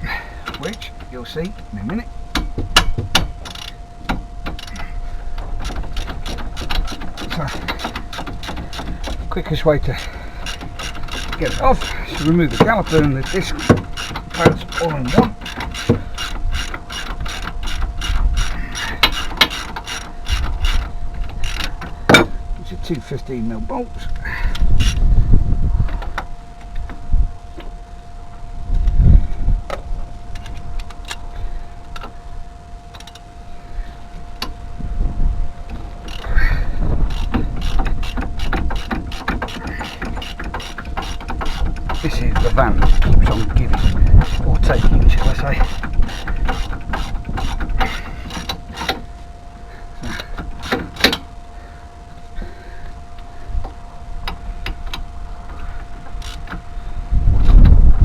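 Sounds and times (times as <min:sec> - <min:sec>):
faint steady tone: 0:00.0 - 0:57.6
faint high hum: 0:00.0 - 0:58.0
low rumbling handling noise: 0:00.0 - 0:58.0
metallic clicks and knocks: 0:00.4 - 0:23.2, 0:37.0 - 0:49.1, 0:50.0 - 0:51.3.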